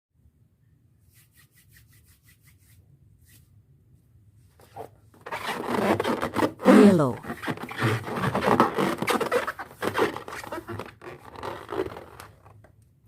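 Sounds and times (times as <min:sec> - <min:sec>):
balloon squeaking when rubbed: 0:04.6 - 0:12.6.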